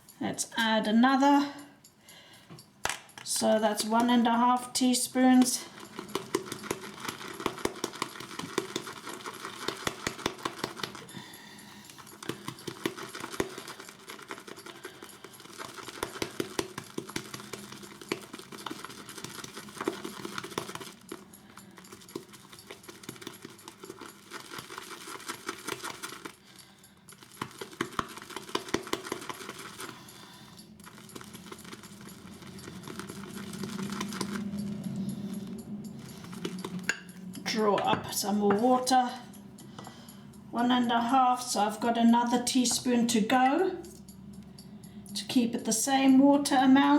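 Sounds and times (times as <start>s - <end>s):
shaving brush whisking lather: 3.4s - 37.3s.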